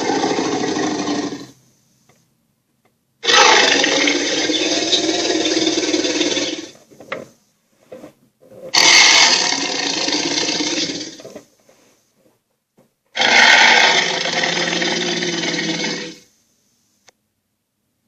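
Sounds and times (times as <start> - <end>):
toy sound effects rough noise: 0.0 - 1.6, 3.2 - 6.8, 8.7 - 11.2, 13.2 - 16.3.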